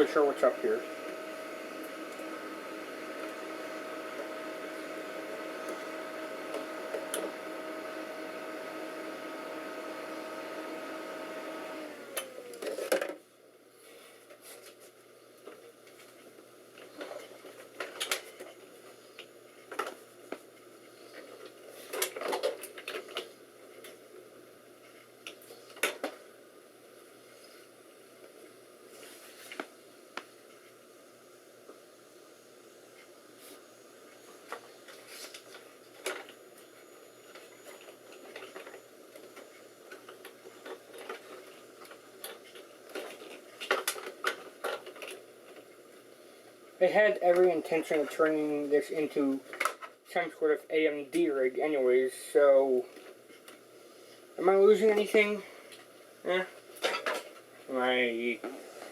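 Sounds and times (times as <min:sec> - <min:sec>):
faint steady hum: 0:00.0 - 0:58.9
clicks and clattering at computer: 0:21.9 - 0:23.9.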